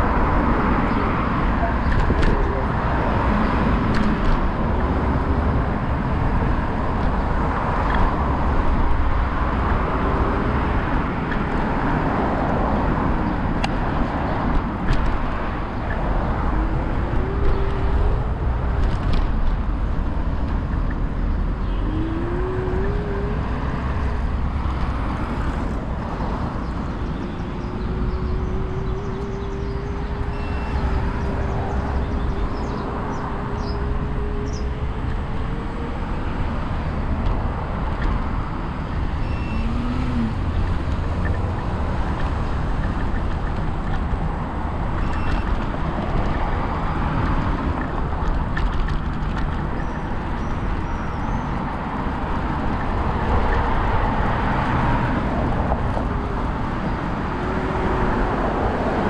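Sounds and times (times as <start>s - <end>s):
road traffic rumble: 0.0s - 59.0s
faint wavering tone: 27.2s - 36.1s.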